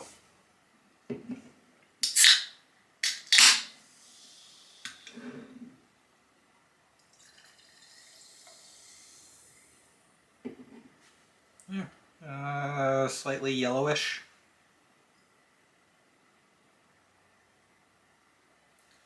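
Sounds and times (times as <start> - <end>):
can opening click and hiss: 2.0 - 5.2
fizzing drink poured: 7.0 - 9.4.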